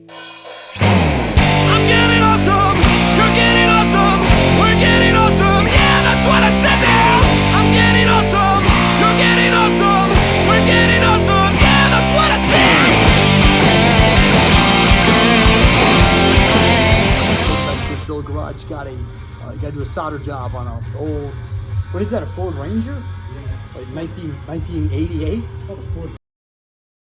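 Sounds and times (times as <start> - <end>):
hard rock music: 0.0 - 18.1.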